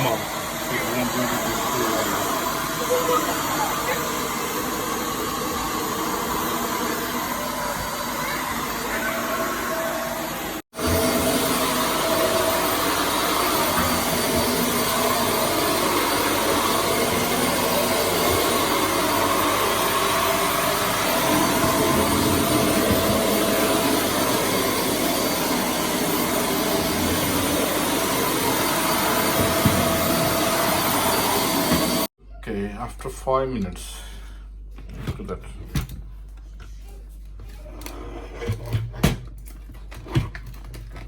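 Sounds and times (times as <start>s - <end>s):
vacuum cleaner running: 0.0s - 32.1s.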